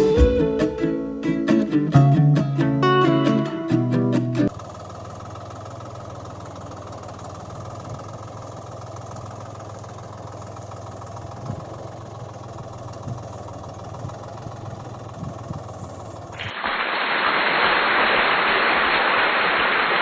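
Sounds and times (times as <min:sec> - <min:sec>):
low motor hum: 0:10.6 - 0:16.4.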